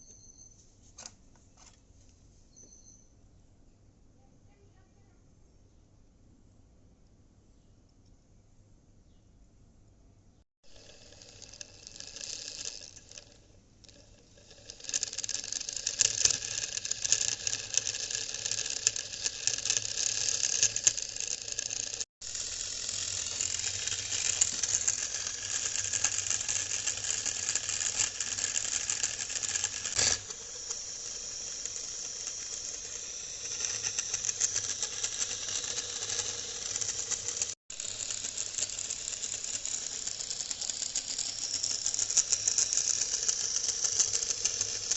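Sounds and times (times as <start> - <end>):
small motor rattling: 10.6 - 44.9.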